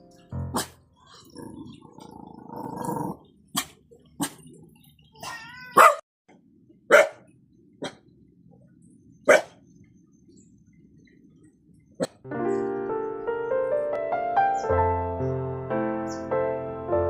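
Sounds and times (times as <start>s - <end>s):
animal barking: 0.4s - 4.5s, 5.7s - 6.0s, 6.9s - 8.0s, 9.2s - 9.6s.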